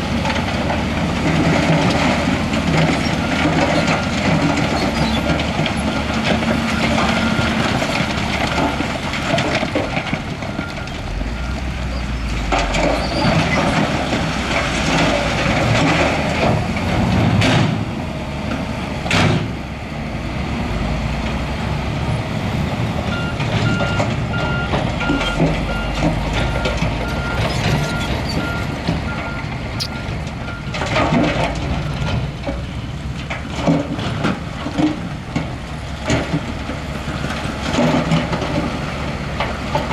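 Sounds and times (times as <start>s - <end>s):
rock and gravel clattering: 0.0s - 17.8s, 23.3s - 39.9s
heavy diesel machinery running: 0.0s - 39.9s
backup alarm beeping: 23.2s - 30.7s.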